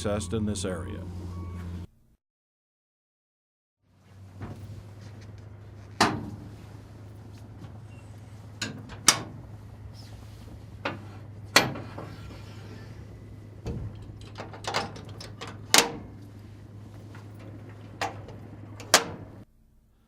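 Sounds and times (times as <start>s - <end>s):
steady low hum: 0.0s - 2.2s, 3.9s - 20.0s
metal doors clanking shut: 6.0s - 6.5s, 8.6s - 9.4s, 10.9s - 16.3s, 17.0s - 19.4s.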